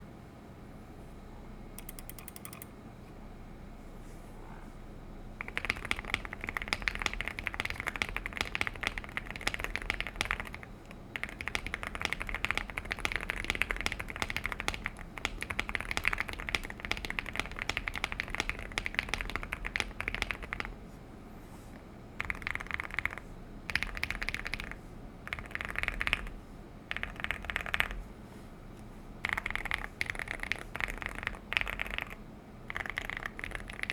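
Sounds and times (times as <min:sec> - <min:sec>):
typing on mechanical keyboard: 0:05.4 - 0:20.8, 0:22.2 - 0:28.0, 0:29.2 - 0:33.9.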